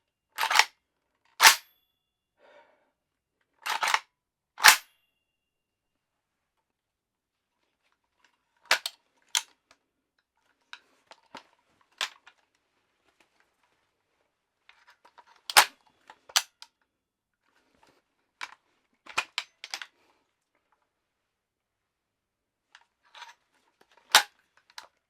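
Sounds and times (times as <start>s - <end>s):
metal clacks of gun handling: 0.4s - 0.7s, 1.4s - 1.8s, 3.6s - 4.0s, 4.6s - 5.0s, 8.2s - 9.6s, 14.7s - 16.8s, 18.4s - 19.9s, 22.8s - 24.9s.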